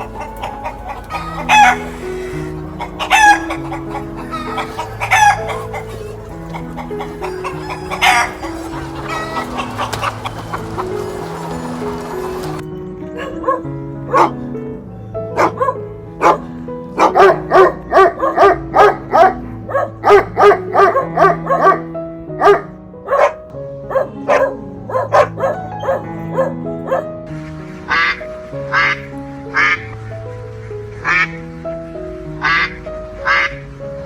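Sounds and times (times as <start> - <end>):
dog barking: 0.0 - 12.6, 13.2 - 14.4, 15.4 - 27.2
background music with held notes: 0.0 - 34.0.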